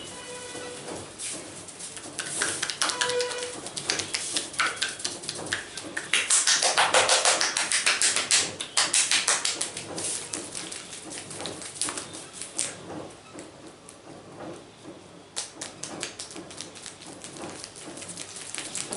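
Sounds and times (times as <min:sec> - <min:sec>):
hands tapping on scalp: 0:01.9 - 0:12.8.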